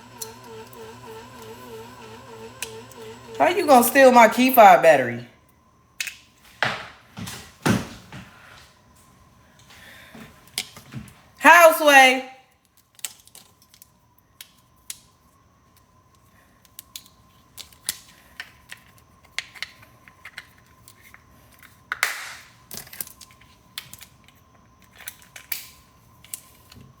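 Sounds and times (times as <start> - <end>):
small objects clicking and tapping: 12.6 - 15.1.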